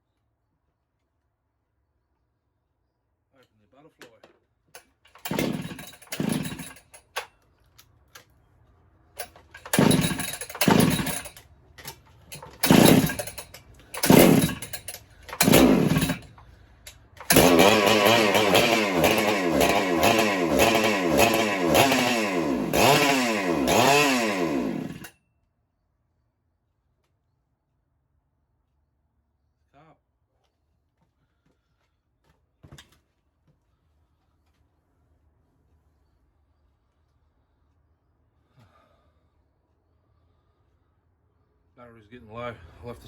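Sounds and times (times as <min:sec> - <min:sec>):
chainsaw starting and revving: 0:05.1 - 0:07.2, 0:09.2 - 0:16.5, 0:17.1 - 0:25.1.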